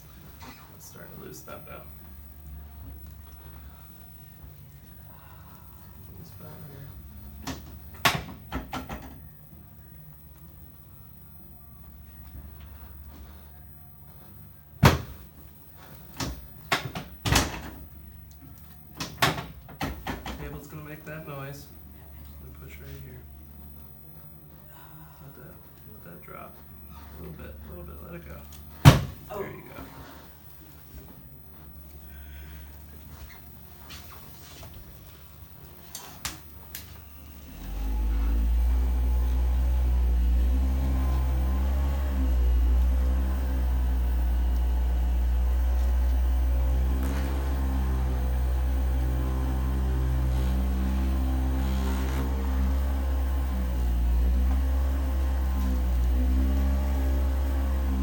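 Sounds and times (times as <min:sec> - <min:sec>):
electric motor humming: 0:19.8 - 0:58.0.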